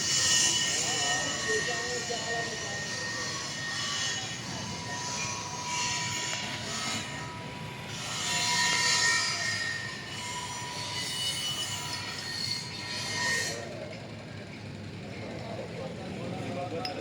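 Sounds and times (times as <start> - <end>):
high-pitched metallic squeal: 0.0 - 13.8.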